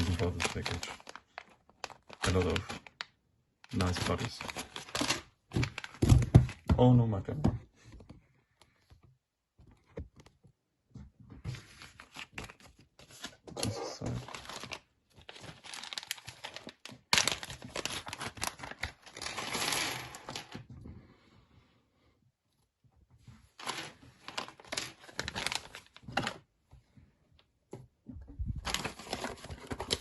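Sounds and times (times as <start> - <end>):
packaging crinkling and tearing: 0.0 - 6.6, 11.8 - 20.6, 23.6 - 26.4, 28.6 - 30.0.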